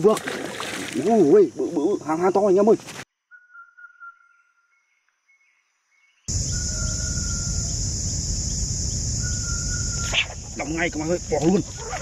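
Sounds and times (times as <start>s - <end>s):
insects droning: 0.0s - 3.0s, 6.3s - 12.0s
low rumbling noise: 6.3s - 11.3s
thin whistling note: 9.2s - 10.4s.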